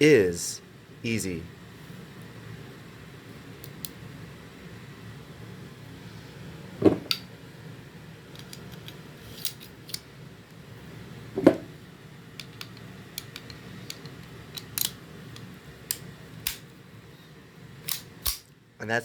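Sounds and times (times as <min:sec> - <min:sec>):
pistol metallic clacks: 0:12.4 - 0:16.7, 0:17.9 - 0:18.5.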